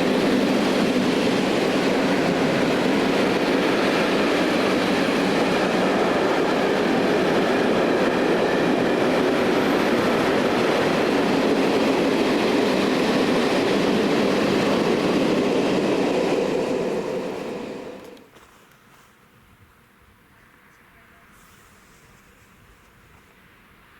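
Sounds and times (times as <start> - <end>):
freight train wheels rumbling: 0.0 - 18.3.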